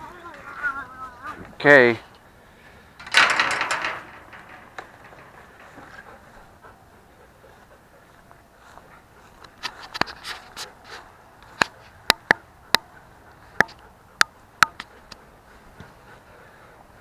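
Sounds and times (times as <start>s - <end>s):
hard objects clicking and knocking: 3.0s - 6.3s
rubbing and scraping: 9.4s - 12.0s.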